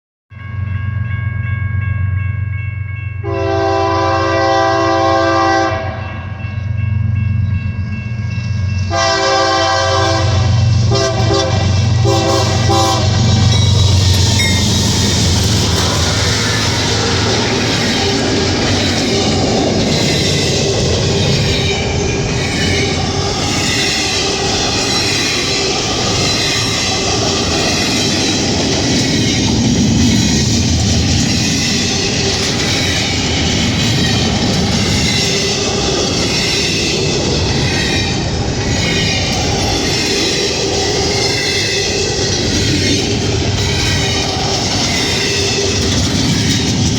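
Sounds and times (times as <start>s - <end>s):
locomotive air horn: 3.2s - 6.2s, 8.9s - 13.4s
locomotives rumbling past: 3.3s - 46.9s.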